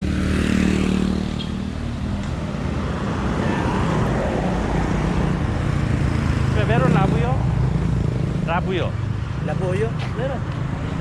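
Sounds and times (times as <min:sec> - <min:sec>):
road traffic noise: 0:00.0 - 0:11.0.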